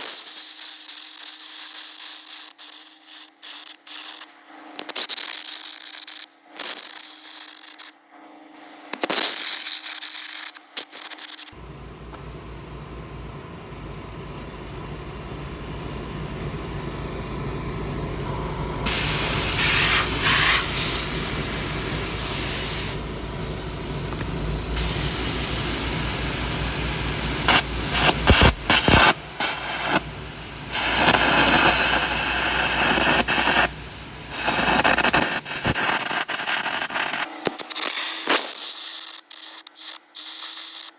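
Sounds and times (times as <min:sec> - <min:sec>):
loud hissing bursts: 0:00.0 - 0:08.0, 0:08.6 - 0:11.6, 0:18.9 - 0:23.1, 0:24.7 - 0:40.9
engine running: 0:11.6 - 0:38.6.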